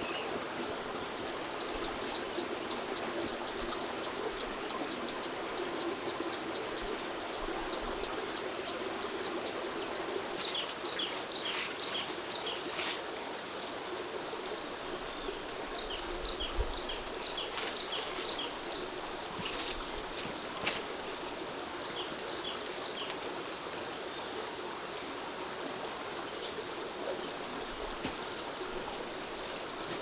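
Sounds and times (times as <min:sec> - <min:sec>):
stream running: 0:00.0 - 0:30.0.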